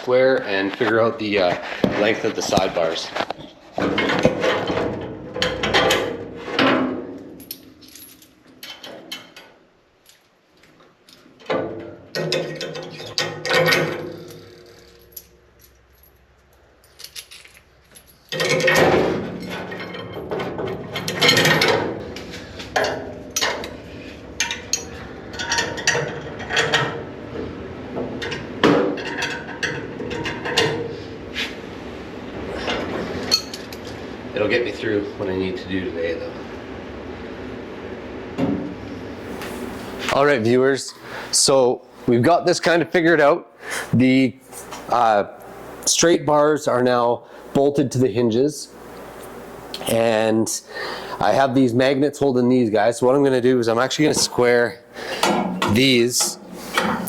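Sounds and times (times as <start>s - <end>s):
steady background noise: 0.0s - 57.0s
metallic clanks of tools and bars: 11.4s - 15.8s, 16.9s - 22.0s, 22.6s - 23.8s, 24.4s - 27.0s, 32.6s - 33.8s, 54.0s - 57.0s.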